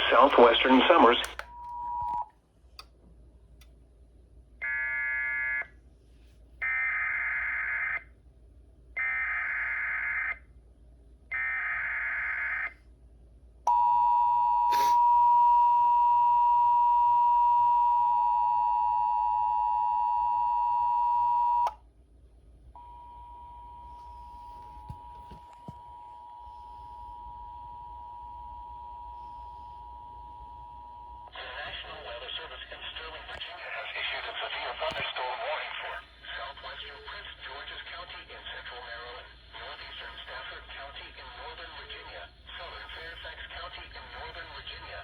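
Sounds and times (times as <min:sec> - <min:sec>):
click: 0:01.2 - 0:03.0.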